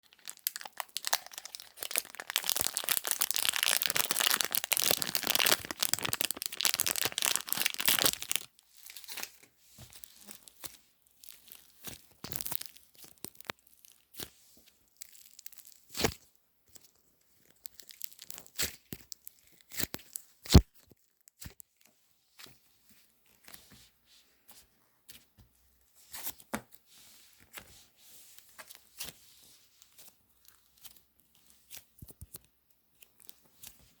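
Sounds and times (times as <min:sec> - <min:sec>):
small squishes and clicks: 0:00.0 - 0:14.3, 0:15.0 - 0:21.9, 0:30.0 - 0:33.8
clay crackling and tearing: 0:00.1 - 0:09.4, 0:11.3 - 0:14.3.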